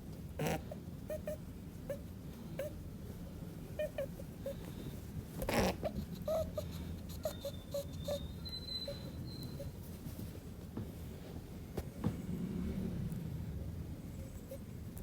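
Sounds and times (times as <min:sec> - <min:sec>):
rabbit hissing: 0:00.4 - 0:02.9, 0:03.7 - 0:09.8
rabbit squeaking: 0:00.4 - 0:02.9, 0:03.6 - 0:10.4.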